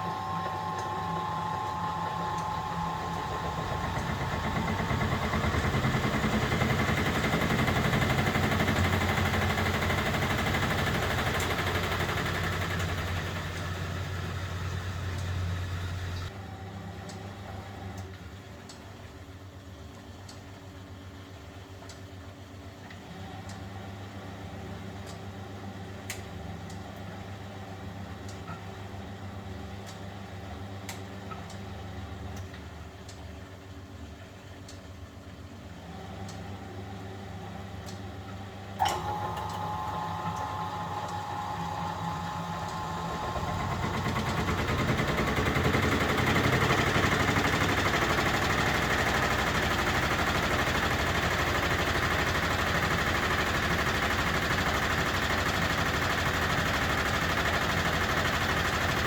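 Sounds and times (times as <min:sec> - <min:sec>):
drum motor running: 0:00.0 - 0:16.3, 0:38.8 - 0:59.0
washing machine humming: 0:00.0 - 0:19.4, 0:35.2 - 0:59.0.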